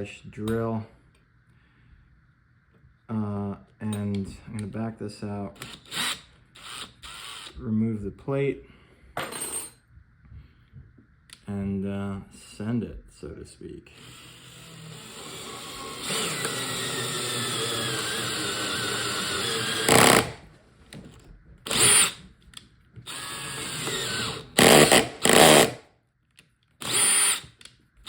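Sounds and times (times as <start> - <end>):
power drill boring into wood: 13.9 - 20.4, 21.7 - 22.2, 23.1 - 25.8, 26.8 - 27.6.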